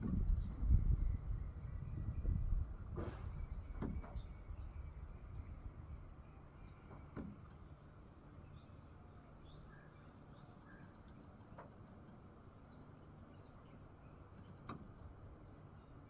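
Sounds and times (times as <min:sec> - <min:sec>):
faint low wind rumble: 0:00.0 - 0:06.9.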